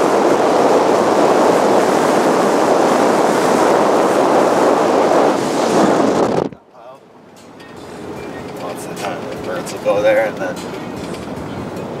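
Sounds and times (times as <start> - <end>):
truck engine and tyres rumbling: 0.0 - 12.0.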